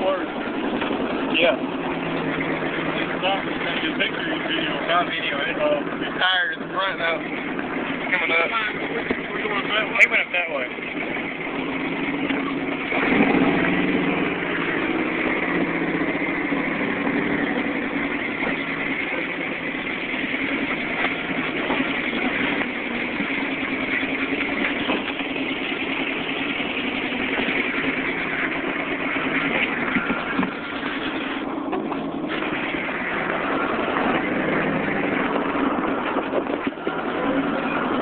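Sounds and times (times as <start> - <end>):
off-road vehicle engine revving: 0.0 - 38.0.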